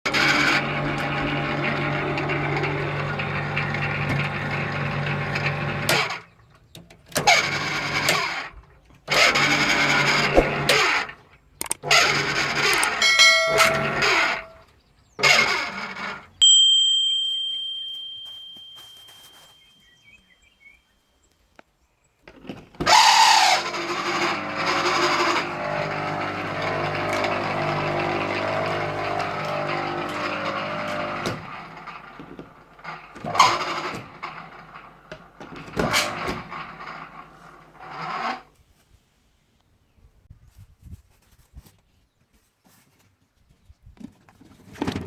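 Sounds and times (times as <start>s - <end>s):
pool pump motor humming: 0.1s - 6.5s, 7.2s - 11.2s, 11.8s - 18.2s, 22.7s - 38.5s
bell-like ding: 13.0s - 14.0s, 16.4s - 20.0s.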